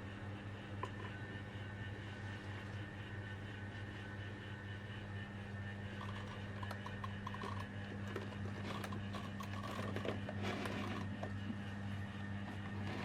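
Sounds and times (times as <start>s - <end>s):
table fan running: 0.0s - 13.0s
fan clicks and rattles: 5.9s - 11.7s.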